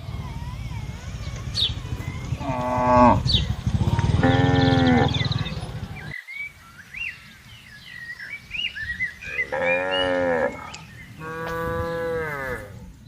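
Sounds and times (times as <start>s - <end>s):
small birds chirping: 0.0s - 13.0s
cow mooing: 2.4s - 5.4s, 9.4s - 12.9s.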